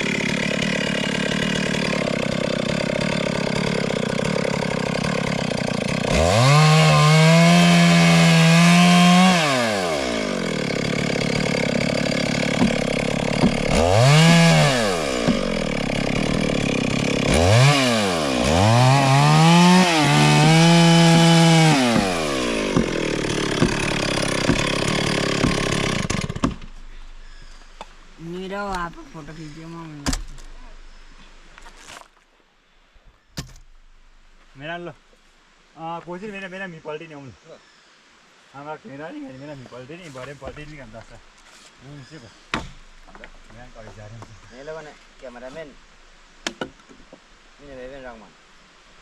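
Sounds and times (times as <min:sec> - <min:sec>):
chainsaw idling and revving: 0:00.0 - 0:31.4.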